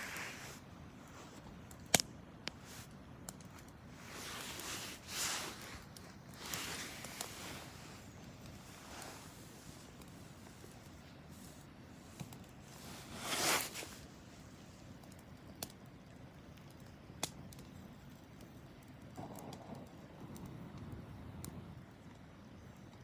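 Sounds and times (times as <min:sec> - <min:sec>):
fire hiss: 0:00.0 - 0:15.0
wood fire crackling: 0:00.0 - 0:23.0.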